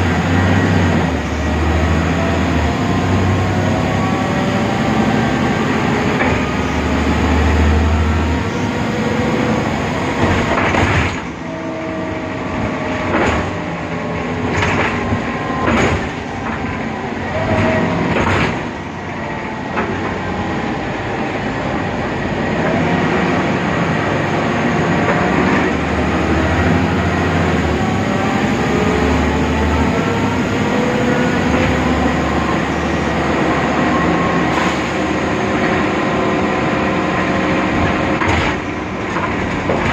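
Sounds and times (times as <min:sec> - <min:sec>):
bus engine droning: 0:00.0 - 0:39.9
knocks and rattles: 0:10.2 - 0:11.4, 0:12.6 - 0:18.8, 0:37.7 - 0:39.9.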